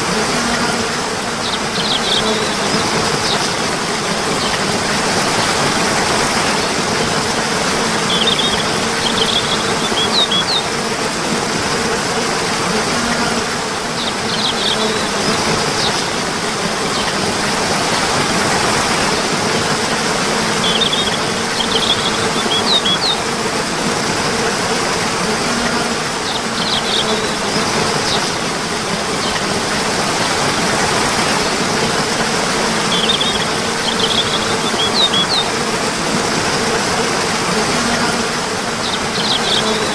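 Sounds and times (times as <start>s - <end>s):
water rushing: 0.0s - 39.9s
high bird chirps: 1.4s - 2.6s, 8.1s - 10.6s, 20.6s - 23.2s, 32.9s - 35.5s.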